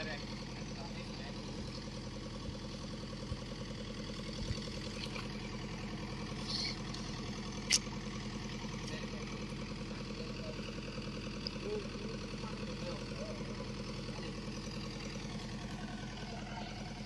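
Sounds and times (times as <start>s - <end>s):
diesel engine idling: 0.0s - 17.0s
sharp click: 7.6s - 7.9s.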